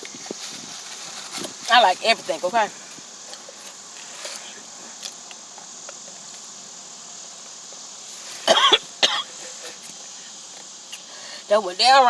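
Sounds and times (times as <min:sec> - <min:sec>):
woman coughing: 0:08.4 - 0:09.4.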